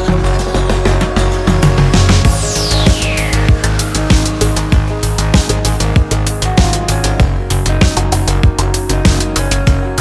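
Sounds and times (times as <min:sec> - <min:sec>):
drum and bass music: 0:00.0 - 0:10.0
deep bass notes: 0:00.1 - 0:10.0.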